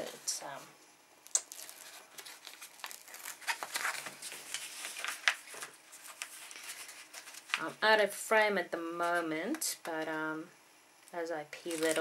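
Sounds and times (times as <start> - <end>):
plastic film crinkling: 1.3 - 7.8, 11.6 - 12.0.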